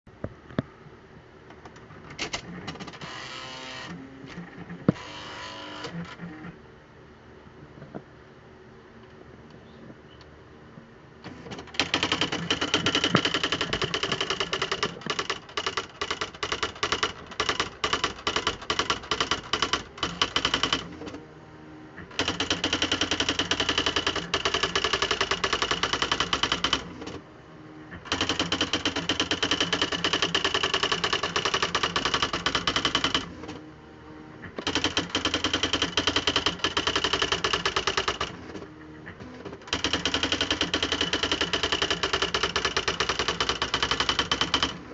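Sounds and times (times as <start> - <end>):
electric typewriter typing: 2.1 - 6.2, 11.3 - 21.2, 22.0 - 27.2, 27.9 - 33.6, 34.4 - 44.9.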